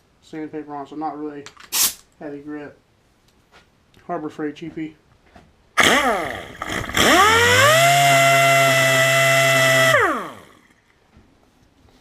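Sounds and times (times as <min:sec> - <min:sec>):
power sander motor: 0:05.8 - 0:10.6.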